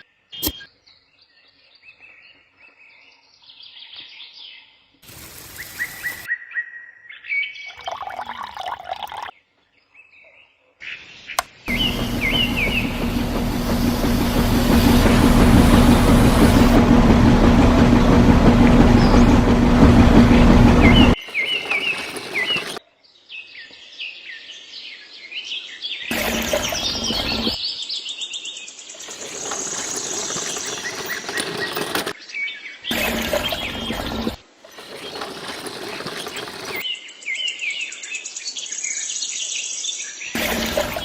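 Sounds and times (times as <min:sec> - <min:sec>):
small birds chirping: 0:28.9 - 0:32.2.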